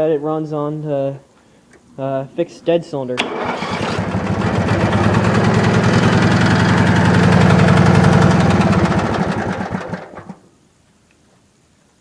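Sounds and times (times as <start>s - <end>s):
tractor engine running: 3.2s - 10.4s.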